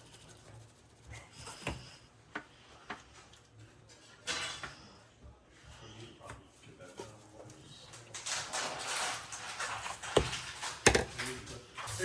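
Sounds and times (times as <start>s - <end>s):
kitchen utensils clicking and tapping: 7.8s - 12.0s.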